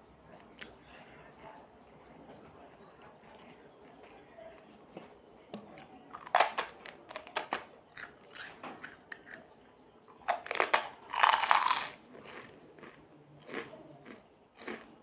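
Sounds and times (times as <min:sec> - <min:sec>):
crunching while eating: 0:05.8 - 0:09.5, 0:10.2 - 0:15.0.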